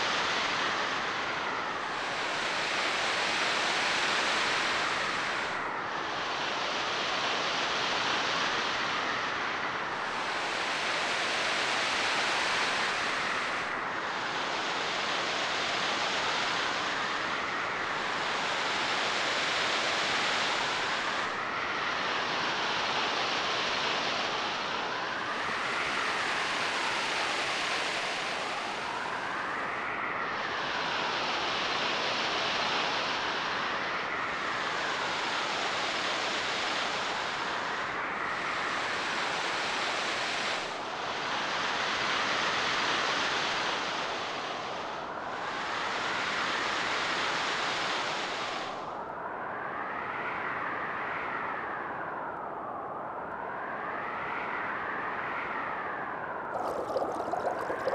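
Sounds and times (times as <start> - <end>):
ocean surf hiss: 56.6 - 57.9.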